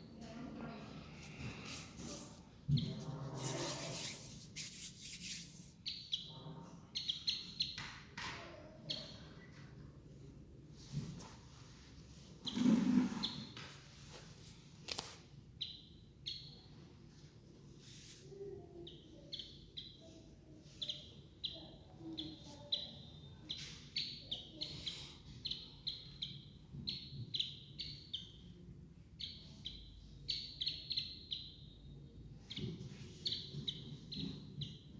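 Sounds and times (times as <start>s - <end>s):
baby birds peeping: 5.8s - 9.7s, 15.6s - 16.7s, 18.8s - 28.6s, 29.2s - 34.9s.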